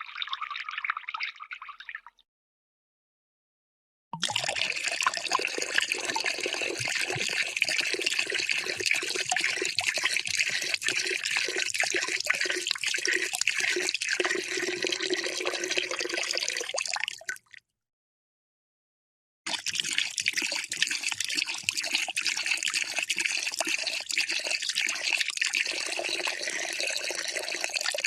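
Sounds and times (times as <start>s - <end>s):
water pouring into cup: 0.0s - 2.2s, 4.2s - 17.6s, 19.5s - 28.0s
water dripping: 4.2s - 17.6s, 19.5s - 28.0s.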